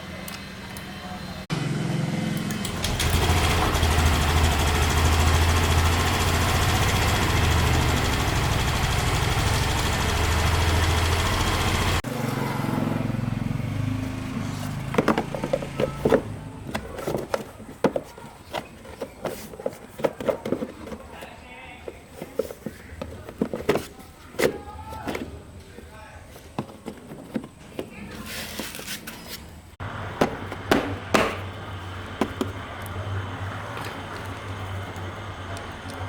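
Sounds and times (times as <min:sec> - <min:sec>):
vehicle engine running: 0:00.0 - 0:21.1, 0:29.8 - 0:36.0
sharp knocks and clicks: 0:30.2 - 0:31.6.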